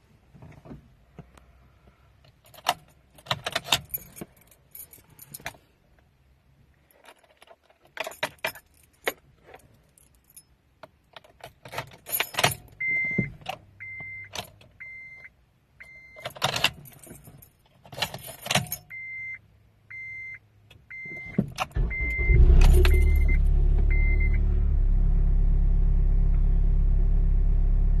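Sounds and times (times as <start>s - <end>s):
keys jangling: 2.4s - 5.6s, 6.9s - 10.5s, 11.2s - 12.7s, 16.2s - 18.9s
car warning chime beeping: 12.8s - 16.3s, 18.9s - 24.5s
car engine starting and idling: 21.6s - 28.0s.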